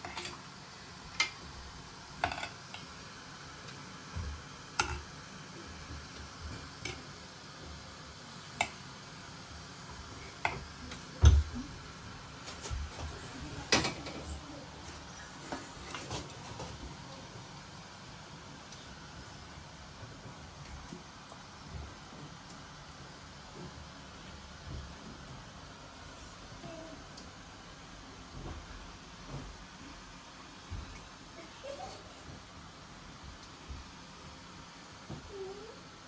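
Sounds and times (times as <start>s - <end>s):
dishes and utensils clicking: 2.2s - 2.8s, 4.8s - 5.1s.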